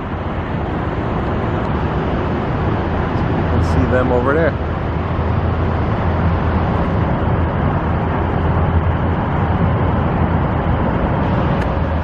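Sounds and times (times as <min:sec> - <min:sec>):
low rumble of vehicles: 0:00.0 - 0:12.0.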